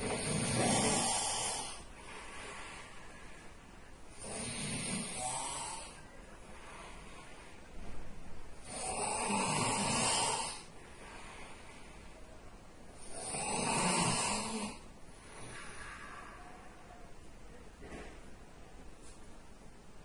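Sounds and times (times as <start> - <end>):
man snoring loudly: 0.0 - 1.8, 4.1 - 6.0, 8.6 - 10.7, 13.0 - 14.8
faint breath: 0.0 - 4.2, 4.8 - 8.2, 10.5 - 13.2, 15.0 - 18.4.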